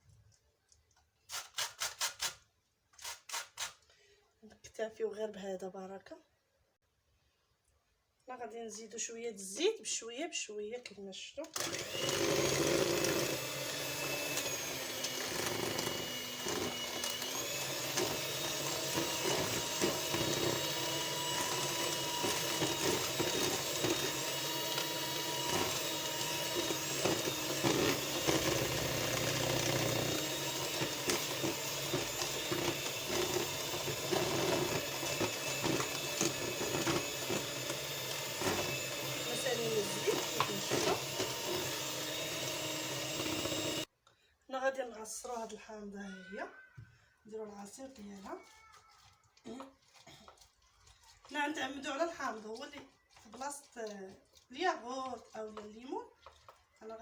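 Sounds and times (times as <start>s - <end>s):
electric mixer whine: 11.6s - 43.9s.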